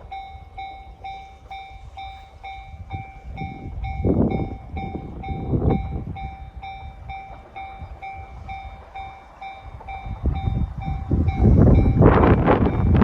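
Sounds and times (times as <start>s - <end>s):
level crossing warning bell: 0.0s - 13.0s
locomotive running noise: 0.0s - 13.0s
steam locomotive exhaust beat: 0.0s - 13.0s.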